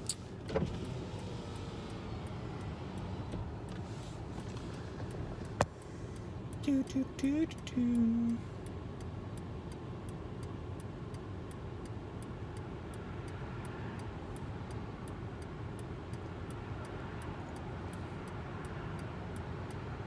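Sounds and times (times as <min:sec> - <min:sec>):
car engine idling: 0:00.0 - 0:13.3
indicator flasher ticking: 0:06.4 - 0:19.8.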